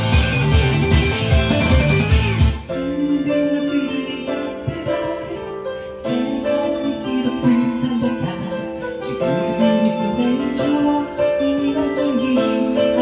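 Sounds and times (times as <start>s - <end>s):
band accompaniment: 0.0s - 2.8s
held keyboard chords: 0.0s - 13.0s.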